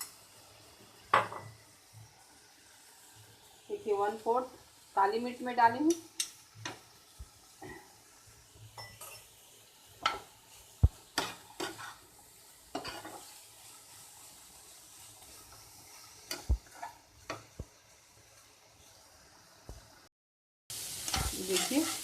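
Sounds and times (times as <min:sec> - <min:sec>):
faint sizzle: 0:00.0 - 0:20.1, 0:20.7 - 0:22.0
utensil scraping a pan: 0:21.1 - 0:22.0.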